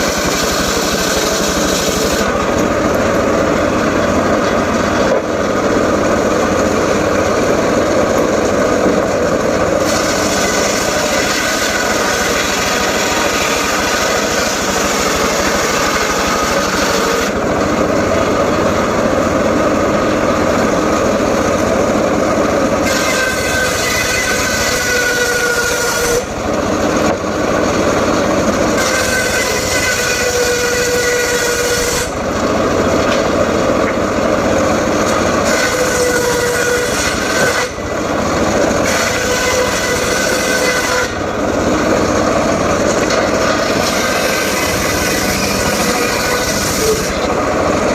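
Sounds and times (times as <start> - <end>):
circular saw cutting wood: 0.0 - 47.9.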